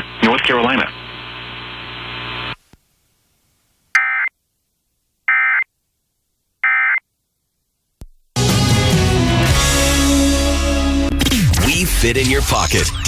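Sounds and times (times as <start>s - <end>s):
music: 8.4s - 13.0s.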